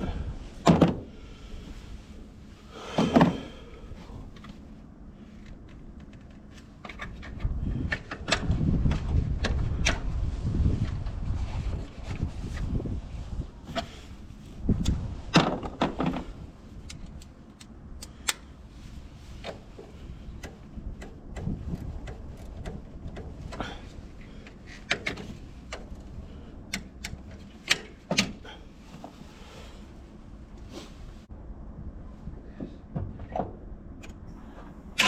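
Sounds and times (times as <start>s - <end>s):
steady low rumble: 0.0s - 35.0s
clicks and clunks of hand tools: 19.4s - 26.1s.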